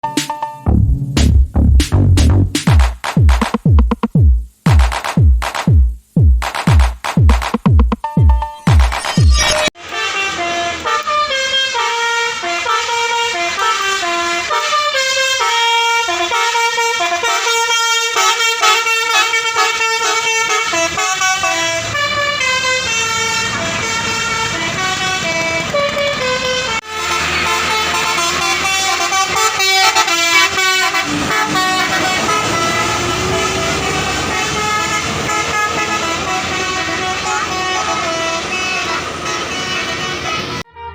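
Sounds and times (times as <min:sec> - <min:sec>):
bus horn playing melodies: 0:09.8 - 0:40.9
road noise: 0:18.4 - 0:40.7.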